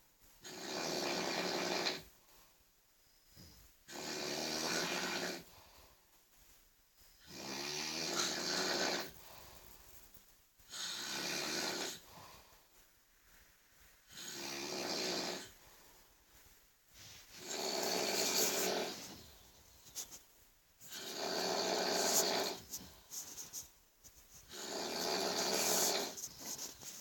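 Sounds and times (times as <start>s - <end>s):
quiet breaths: 0.0s - 27.0s
person snoring heavily: 0.4s - 2.0s, 3.9s - 5.5s, 7.2s - 9.2s, 10.7s - 12.1s, 14.1s - 15.6s, 17.4s - 19.2s, 20.8s - 22.8s, 24.5s - 26.2s.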